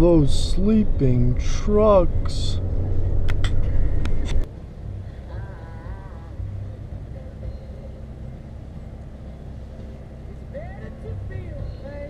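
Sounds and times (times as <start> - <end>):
vehicle engine rumble: 0.0 - 12.0
faint wavering tone: 5.0 - 11.0.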